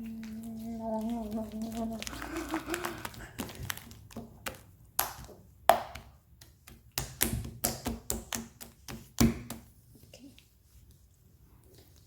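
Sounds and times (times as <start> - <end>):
slime clicking and popping: 1.6 - 9.6.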